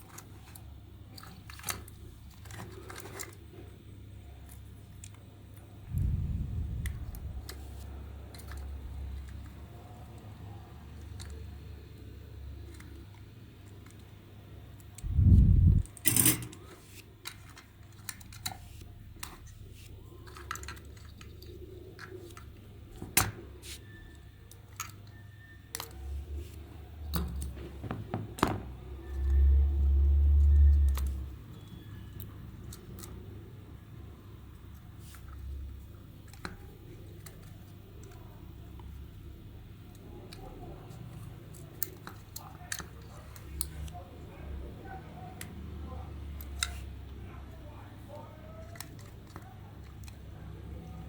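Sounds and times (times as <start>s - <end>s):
low thumps: 5.9s - 7.4s, 15.0s - 15.8s
low rumble: 5.9s - 7.5s, 15.0s - 15.9s.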